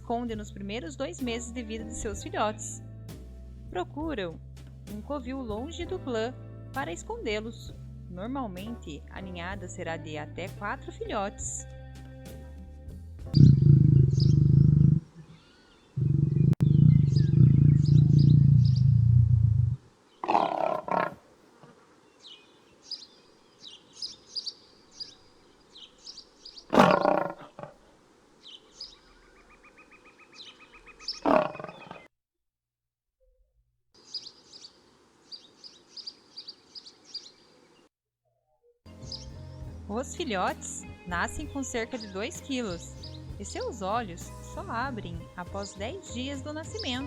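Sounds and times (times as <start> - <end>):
lion growling deeply: 13.3 - 15.3, 16.0 - 21.8, 26.7 - 27.9, 31.1 - 32.1
birds chirping: 13.3 - 32.1, 34.0 - 37.9, 38.9 - 47.0.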